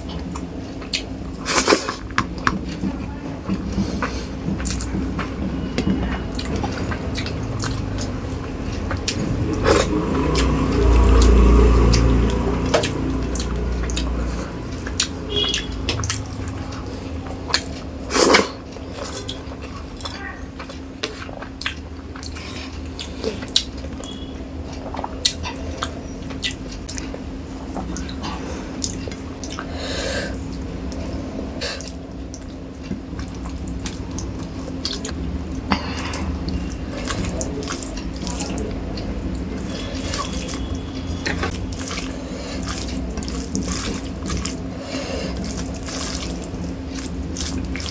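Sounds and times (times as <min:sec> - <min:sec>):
steady low hum: 0:00.0 - 0:47.9
wet chewing and lip smacks: 0:06.3 - 0:18.4, 0:20.6 - 0:29.7, 0:31.8 - 0:47.9.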